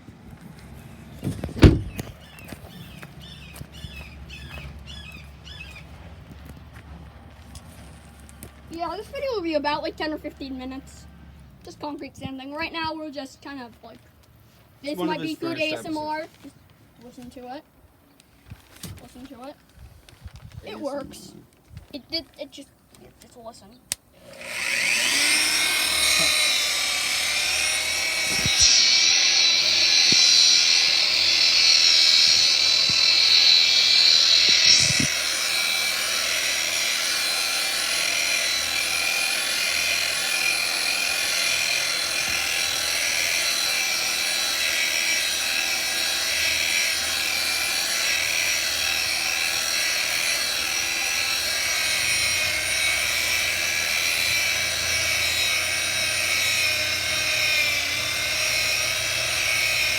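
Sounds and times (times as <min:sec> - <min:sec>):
power sander on concrete: 0:00.0 - 0:09.2, 0:24.2 - 0:59.9.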